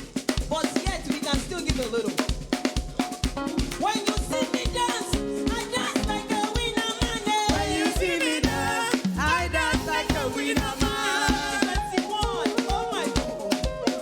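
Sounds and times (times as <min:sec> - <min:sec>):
drum kit beat: 0:00.0 - 0:14.0
voices singing: 0:04.3 - 0:14.0.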